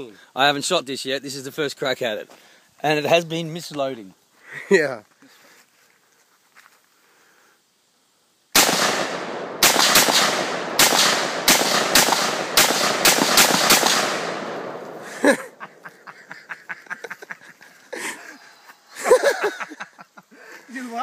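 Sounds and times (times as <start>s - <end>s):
rifle shots echoing: 8.6s - 15.3s.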